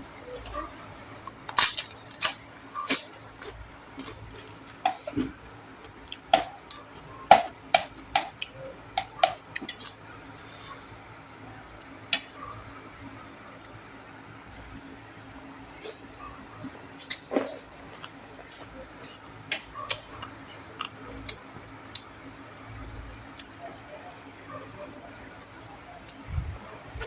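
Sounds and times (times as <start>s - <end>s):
person chewing with mouth clicks: 1.2s - 7.0s, 11.7s - 12.0s, 13.5s - 13.8s, 17.0s - 22.2s, 23.3s - 24.3s.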